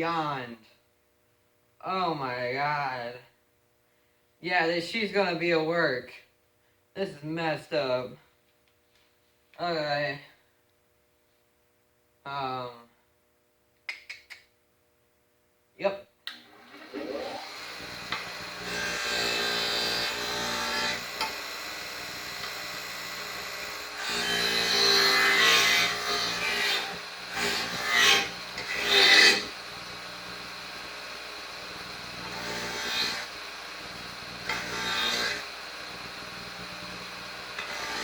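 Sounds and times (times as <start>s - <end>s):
motor hum: 16.3s - 38.0s
wire wheel rasping on metal: 16.6s - 38.0s.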